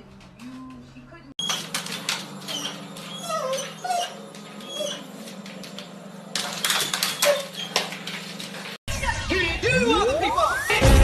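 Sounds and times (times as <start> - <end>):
pet whining cries: 2.4 - 5.4, 6.9 - 8.0.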